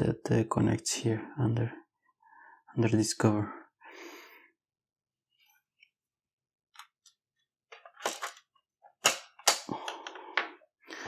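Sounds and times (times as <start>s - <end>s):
plastic parts clicking: 6.8s - 10.5s.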